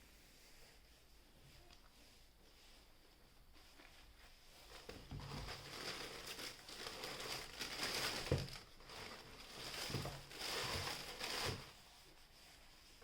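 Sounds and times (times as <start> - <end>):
wrapping crinkling and rustling: 3.6 - 12.0.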